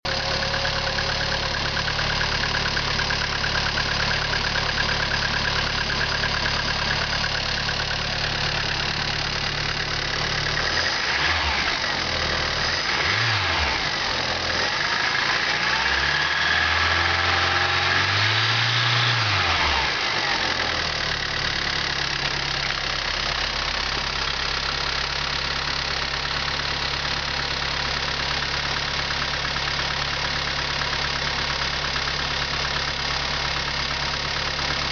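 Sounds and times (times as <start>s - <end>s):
car engine idling with clatter: 0.1s - 34.9s
engine revving: 9.6s - 22.6s.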